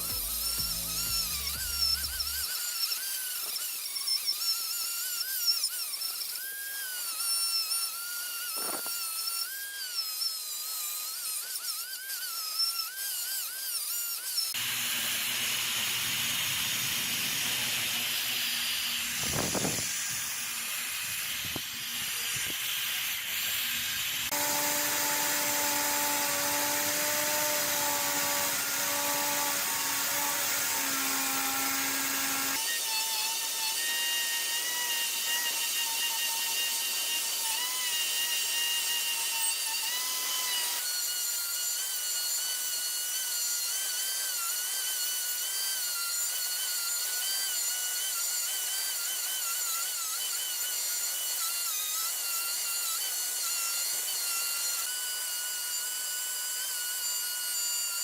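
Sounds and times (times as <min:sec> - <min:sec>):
steady motor hum: 0:00.0 - 0:02.5, 0:14.5 - 0:32.6
power tool whine: 0:00.0 - 0:58.0.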